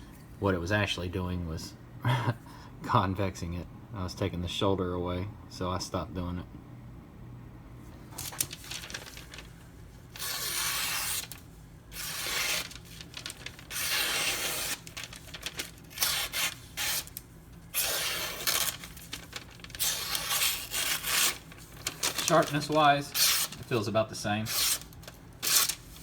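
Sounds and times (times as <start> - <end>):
knife slicing through paper: 8.2 - 9.6, 10.2 - 26.0.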